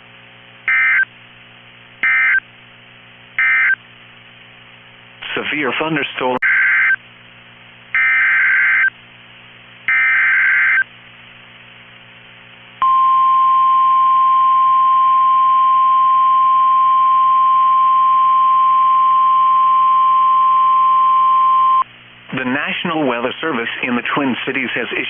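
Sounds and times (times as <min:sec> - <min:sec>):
steady warning alarm tone: 0:00.7 - 0:01.1, 0:02.0 - 0:02.4, 0:03.4 - 0:03.8, 0:06.4 - 0:07.0, 0:08.0 - 0:08.9, 0:09.9 - 0:10.8.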